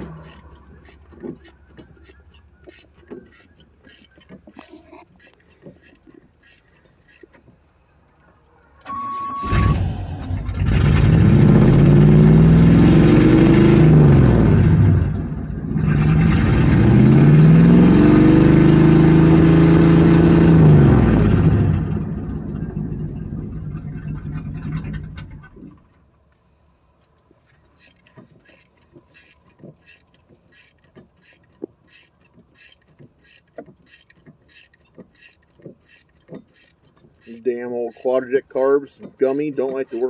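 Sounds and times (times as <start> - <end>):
engine revving and idling roughly: 0.0 - 6.6, 9.4 - 25.9, 36.2 - 40.0
short steady tone: 8.9 - 9.9.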